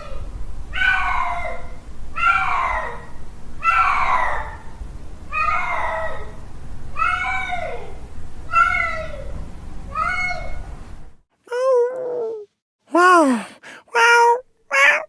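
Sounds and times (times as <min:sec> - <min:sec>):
cat yowling: 0:00.0 - 0:04.7, 0:05.3 - 0:06.4, 0:07.0 - 0:09.3, 0:09.9 - 0:10.6, 0:14.0 - 0:15.0.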